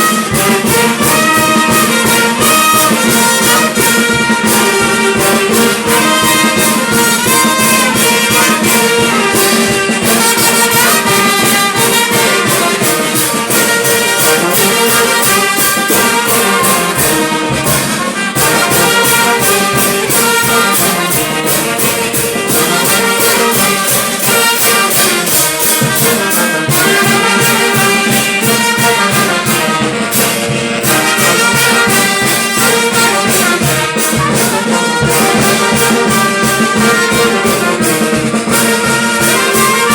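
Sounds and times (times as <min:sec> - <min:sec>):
brass band playing: 0:00.0 - 0:39.9.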